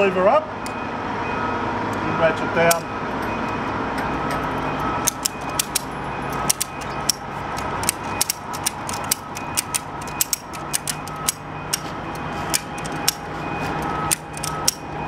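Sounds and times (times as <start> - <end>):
ratchet strap pawl clicking: 4.0 - 15.0.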